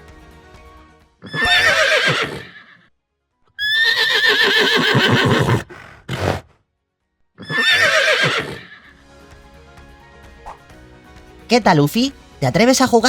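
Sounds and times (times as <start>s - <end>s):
horse whinnying: 1.2s - 2.9s, 3.6s - 6.6s, 7.4s - 8.9s
horse breathy snort: 5.2s - 6.6s.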